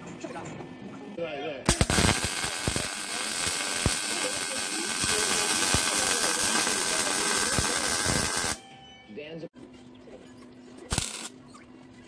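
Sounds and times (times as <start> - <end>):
welding arc crackling: 1.7 - 8.6, 10.9 - 11.3.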